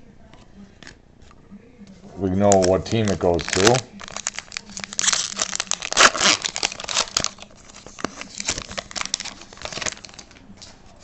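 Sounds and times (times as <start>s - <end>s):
foil wrapper crinkling: 2.3s - 10.6s.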